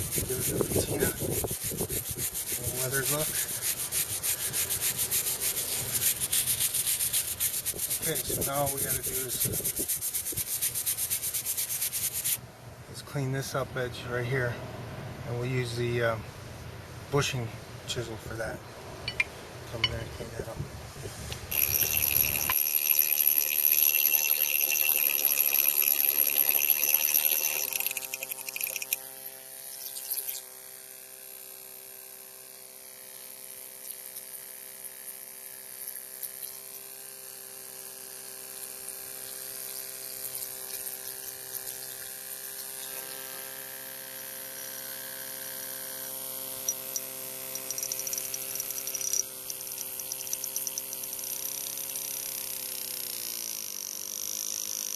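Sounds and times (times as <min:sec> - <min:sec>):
bushing chisel tool whining on stone: 0:00.0 - 0:12.4, 0:21.5 - 0:30.5, 0:38.8 - 0:54.9.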